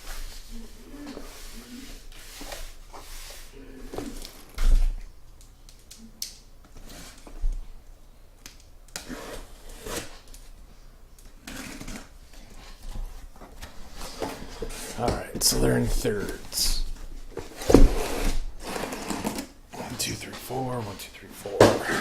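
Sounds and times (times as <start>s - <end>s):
cardboard boxes rustling: 11.5s - 22.0s.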